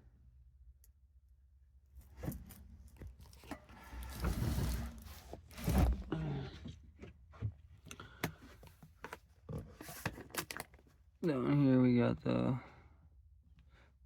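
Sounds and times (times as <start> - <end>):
cardboard boxes scraping and sliding: 3.7 - 6.1.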